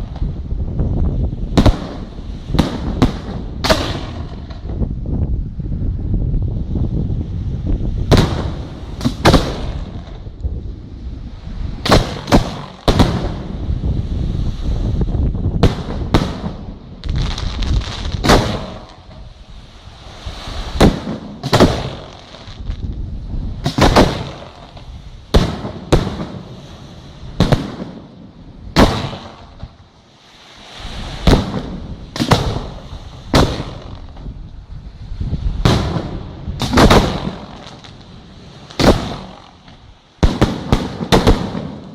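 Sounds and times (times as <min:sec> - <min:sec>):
low rumble and crackle: 0:00.0 - 0:41.9
firework shells bursting: 0:11.9 - 0:13.5, 0:15.6 - 0:19.3, 0:20.8 - 0:22.8, 0:23.6 - 0:26.6, 0:31.2 - 0:34.3, 0:35.6 - 0:38.1, 0:38.7 - 0:41.9.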